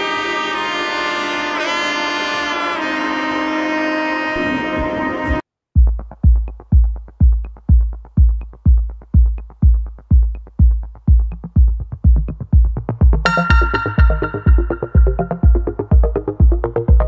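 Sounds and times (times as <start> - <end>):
electronic dance music: 0.0 - 17.0
four-on-the-floor kick drum: 5.8 - 17.0
synth chord: 13.2 - 17.0.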